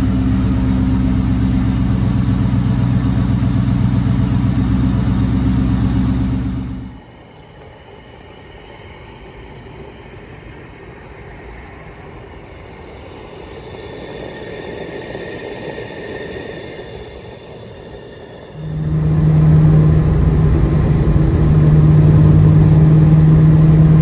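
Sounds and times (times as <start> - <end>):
car engine idling: 0.0 - 7.0, 18.6 - 24.0
faint high whine: 0.0 - 7.0, 16.5 - 24.0
steady low rumble: 0.0 - 7.0, 18.6 - 24.0.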